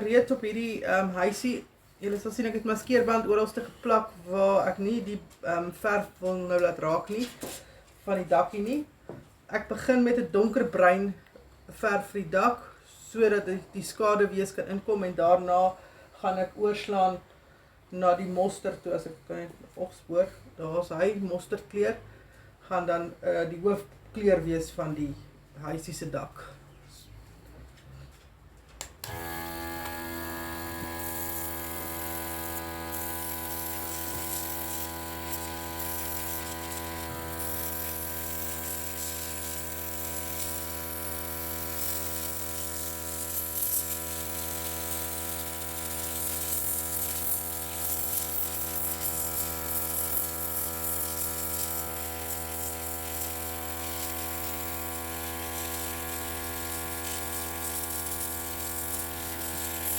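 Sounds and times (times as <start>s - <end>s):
compressor motor buzzing hum: 28.8s - 59.9s
airbrush air hissing: 29.2s - 59.9s.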